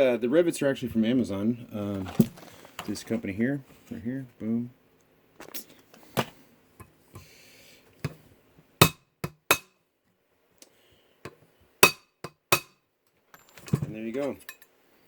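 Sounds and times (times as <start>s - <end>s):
hammer tapping rivets: 8.8s - 9.7s, 11.3s - 12.8s.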